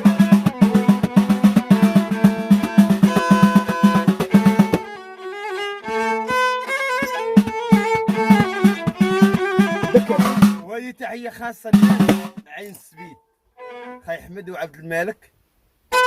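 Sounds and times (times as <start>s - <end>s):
fast drum beat: 0.0s - 4.9s, 7.0s - 10.7s, 11.7s - 12.4s
violin melody: 0.0s - 10.7s, 12.0s - 14.4s.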